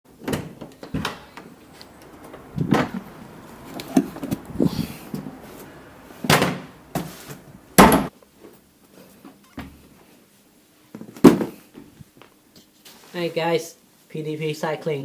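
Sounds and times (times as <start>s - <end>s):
loud thumps: 0.9s - 8.1s.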